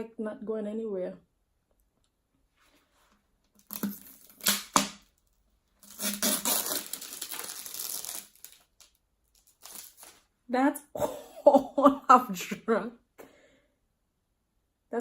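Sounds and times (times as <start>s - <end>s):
plastic bottle crinkling: 3.6s - 10.2s.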